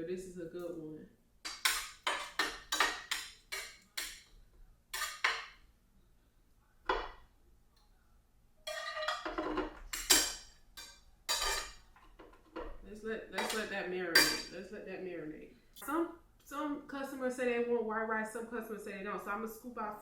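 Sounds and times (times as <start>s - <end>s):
metal cookware clanking: 1.4s - 5.6s, 6.9s - 7.2s, 8.6s - 14.7s.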